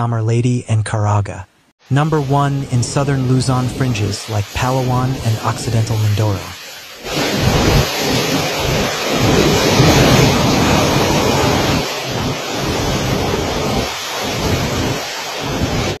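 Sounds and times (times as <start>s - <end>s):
heavy rain: 2.1s - 16.0s
strong wind: 6.5s - 16.0s
wind buffeting microphone: 7.0s - 16.0s.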